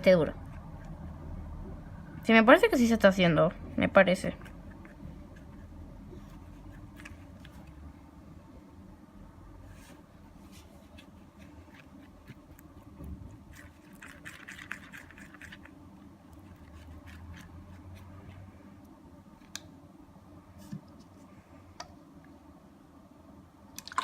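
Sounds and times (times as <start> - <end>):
slime stirred in a bowl: 4.0 - 7.9, 9.7 - 18.8.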